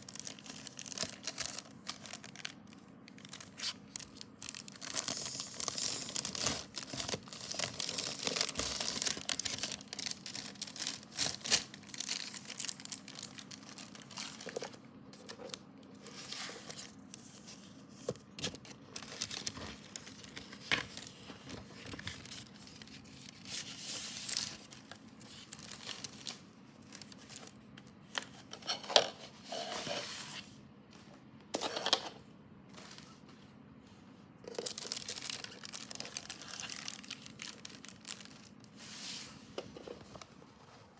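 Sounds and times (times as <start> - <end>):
packaging tearing: 0.0 - 15.3, 34.5 - 38.5
packaging rustling and crinkling: 0.0 - 30.4, 32.7 - 33.3, 34.4 - 40.9.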